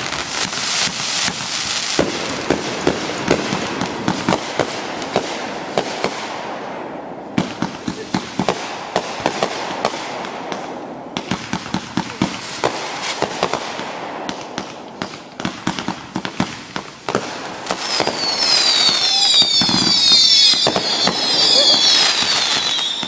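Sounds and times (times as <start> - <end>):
fireworks popping and banging: 0.0 - 23.0
whistles gliding down in pitch: 17.8 - 23.0.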